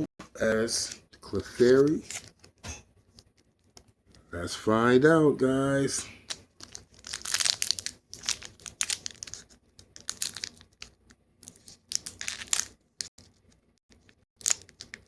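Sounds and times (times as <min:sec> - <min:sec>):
foil wrapper crinkling: 0:06.3 - 0:13.4, 0:14.0 - 0:15.0.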